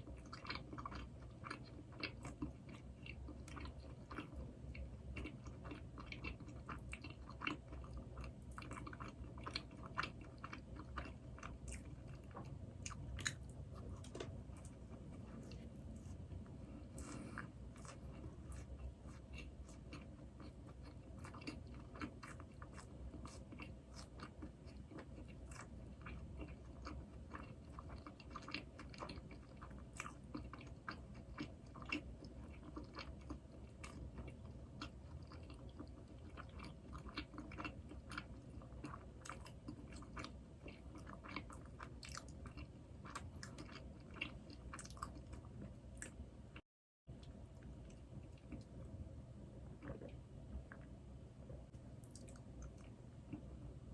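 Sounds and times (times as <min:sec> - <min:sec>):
person chewing doughnuts: 0:00.0 - 0:48.9, 0:49.6 - 0:50.9.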